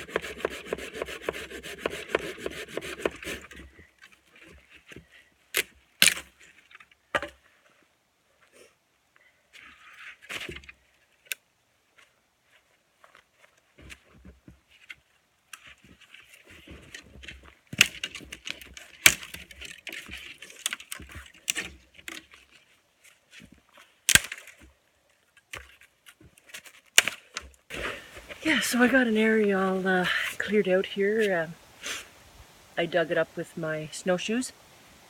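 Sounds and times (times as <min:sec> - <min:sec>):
snow crunching and scraping: 0:27.5 - 0:32.5.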